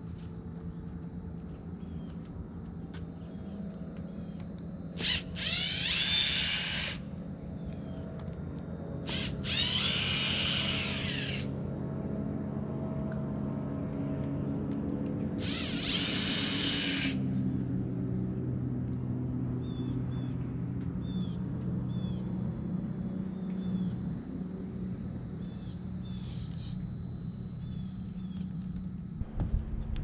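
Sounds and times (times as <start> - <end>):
low hum: 0.0 - 30.0
power drill whining: 5.0 - 7.1, 9.1 - 11.5, 15.4 - 17.2.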